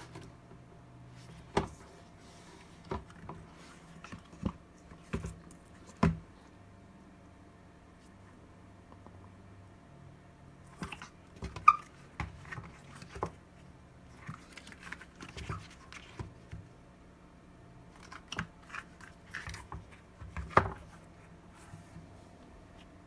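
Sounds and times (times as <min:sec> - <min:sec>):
faint steady hum: 0:00.0 - 0:23.0.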